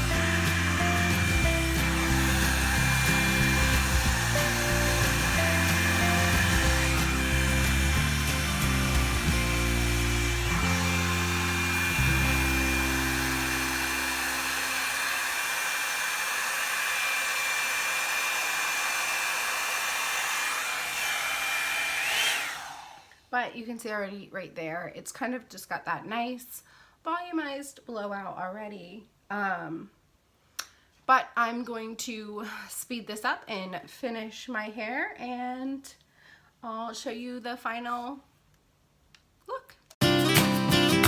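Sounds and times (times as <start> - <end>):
background music: 0.0 - 13.6, 40.0 - 41.0
hair dryer brush whining: 0.0 - 23.3.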